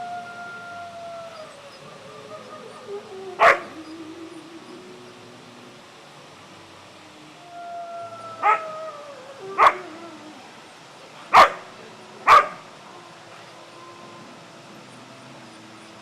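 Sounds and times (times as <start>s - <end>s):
dog howling: 0.0s - 5.8s, 7.3s - 15.9s
dog barking: 3.4s - 3.7s, 11.3s - 11.7s, 12.3s - 12.6s.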